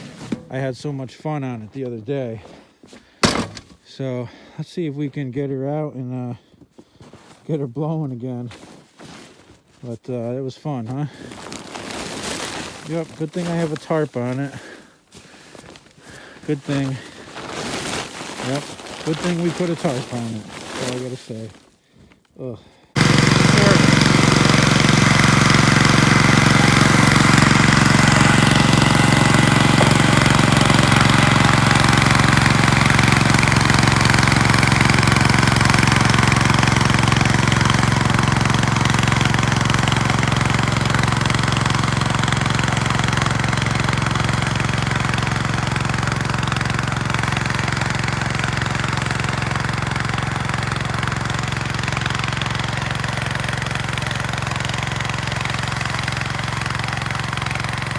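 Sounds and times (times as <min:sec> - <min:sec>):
tractor engine running: 0:03.2 - 0:03.8, 0:11.8 - 0:21.6, 0:23.0 - 0:57.9.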